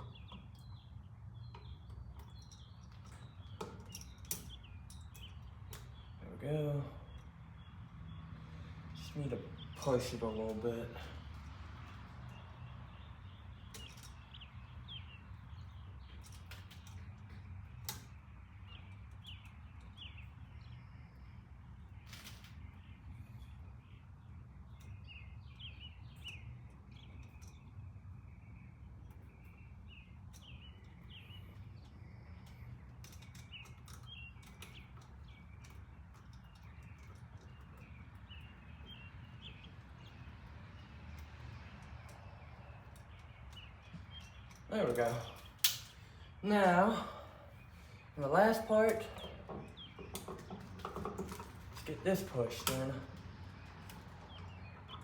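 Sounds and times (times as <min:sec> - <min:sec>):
small birds chirping: 0:00.0 - 0:55.0
sharp clicks: 0:41.2 - 0:46.0.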